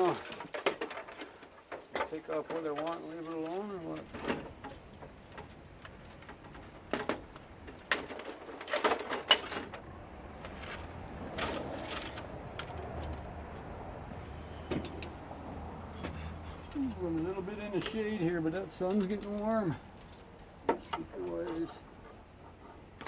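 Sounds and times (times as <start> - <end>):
hand tools clicking and knocking: 0.0 - 9.8, 15.9 - 23.0.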